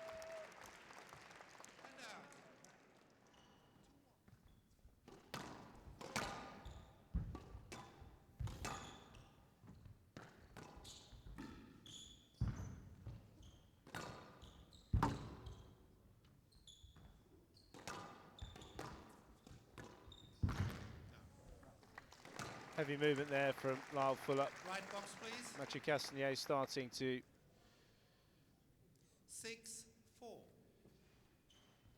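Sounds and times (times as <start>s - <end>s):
shoes squeaking on court floor: 3.3s - 21.5s, 30.9s - 31.9s
squash ball cracking off walls: 17.8s - 21.1s.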